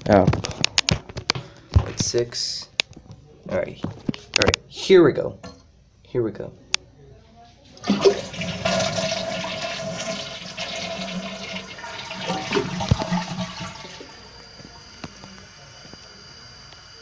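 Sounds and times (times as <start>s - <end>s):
toilet flushing rush of water: 7.8s - 15.7s.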